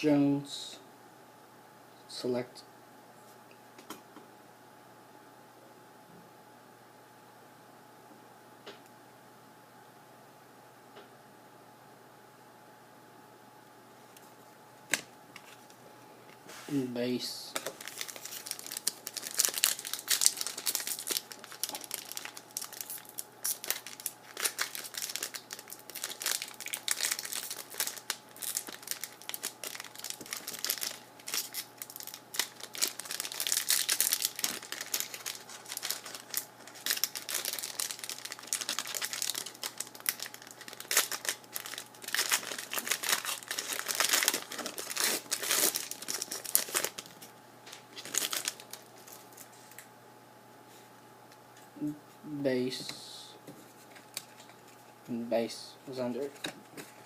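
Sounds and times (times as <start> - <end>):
faint steady hum: 0.0 - 57.0
wrappers crinkling and tearing: 17.5 - 49.8.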